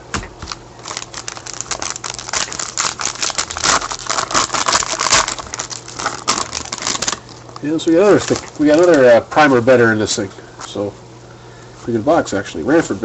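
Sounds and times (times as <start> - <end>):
plastic packaging crinkling: 0.4 - 9.7.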